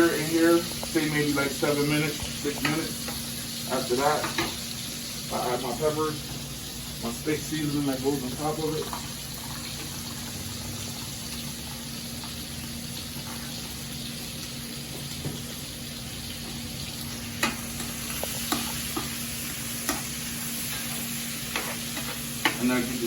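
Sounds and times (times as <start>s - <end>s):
steak sizzling in a hot pan: 0.0s - 23.0s.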